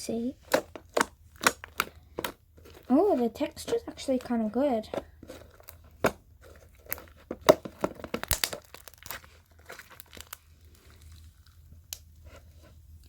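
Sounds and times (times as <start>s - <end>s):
slime squishing with clicks and pops: 0.4s - 2.9s, 6.8s - 12.1s.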